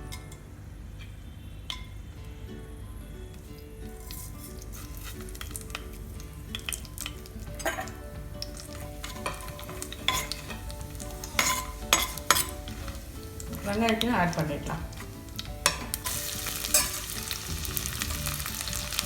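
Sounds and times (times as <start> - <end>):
soft background music: 0.0 - 19.0
spoon knocking and scraping pot: 1.0 - 2.0, 3.9 - 14.1, 14.9 - 17.2
spices sizzling in oil: 3.3 - 19.0.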